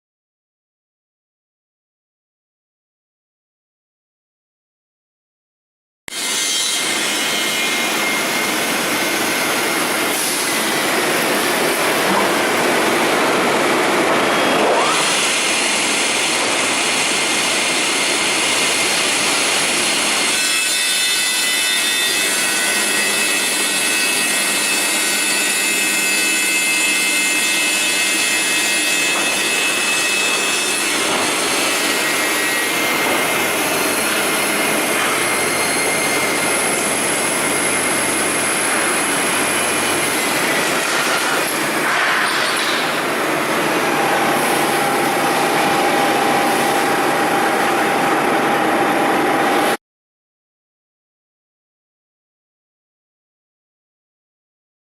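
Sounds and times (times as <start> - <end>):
cutting machine whining: 6.1 - 41.8, 42.8 - 49.8.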